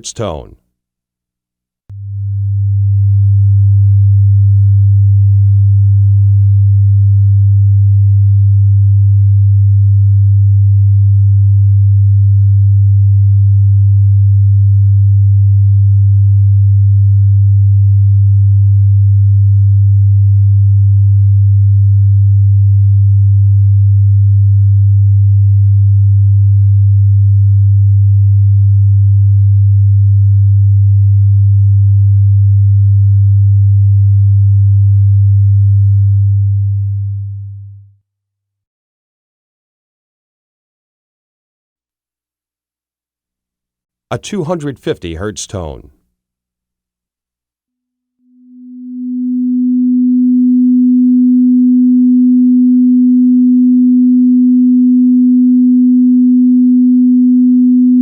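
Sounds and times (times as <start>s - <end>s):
low sine-wave test tone: 1.9s - 37.9s, 48.2s - 58.0s.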